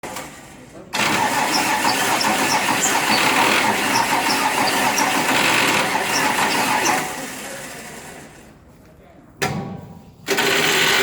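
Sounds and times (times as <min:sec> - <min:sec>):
engine clattering: 0:01.0 - 0:08.2.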